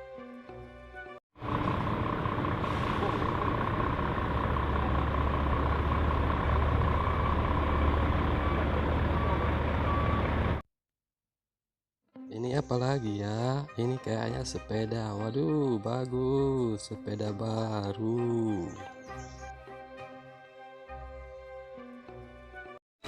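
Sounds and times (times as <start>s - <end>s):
truck engine rumbling: 1.4s - 10.6s.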